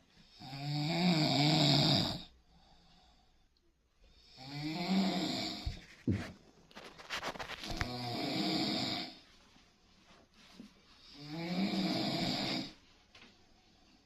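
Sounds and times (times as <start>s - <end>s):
person snoring: 0.2s - 2.3s, 4.2s - 5.8s, 7.8s - 9.2s, 11.1s - 12.8s.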